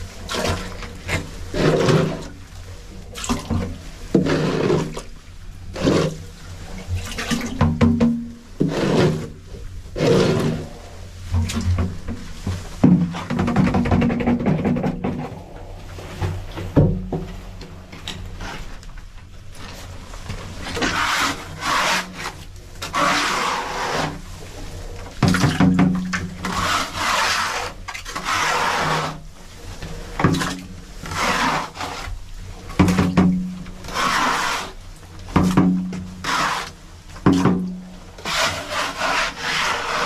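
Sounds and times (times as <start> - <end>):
rasping rubbing strokes: 20.7 - 24.7, 33.8 - 34.8, 36.2 - 36.8, 38.2 - 40.0.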